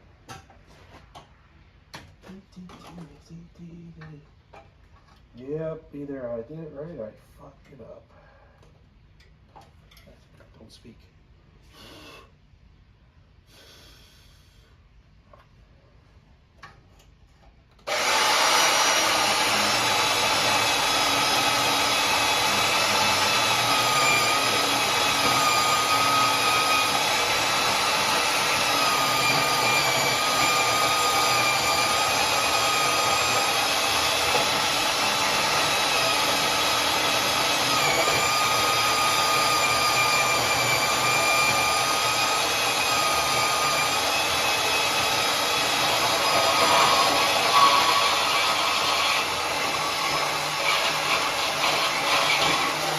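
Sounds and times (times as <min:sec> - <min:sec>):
power tool whining: 0:17.8 - 0:52.9.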